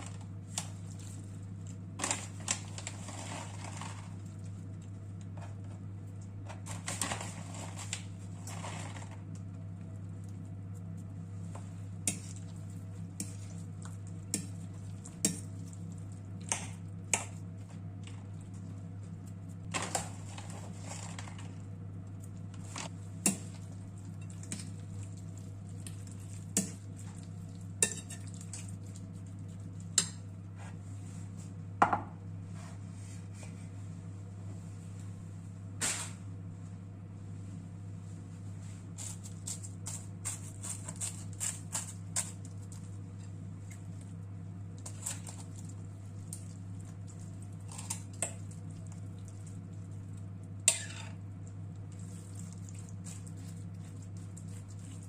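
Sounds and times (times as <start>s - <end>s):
steady low hum: 0.0s - 55.0s
utensils clinking against dishes: 27.8s - 28.4s.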